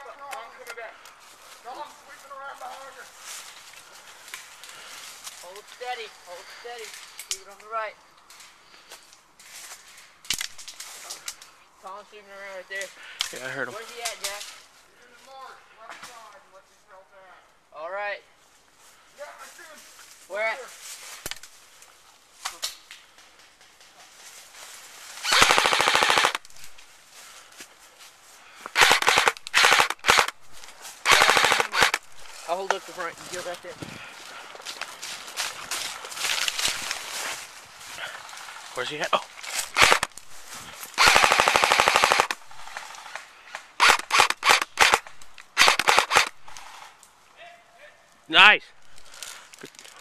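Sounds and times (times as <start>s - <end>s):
airsoft gun full-auto burst: 25.2s - 26.4s, 28.8s - 30.4s, 31.0s - 32.0s, 39.7s - 40.1s, 41.0s - 43.2s, 43.8s - 46.9s
airsoft rifle single shots: 43.8s - 46.8s.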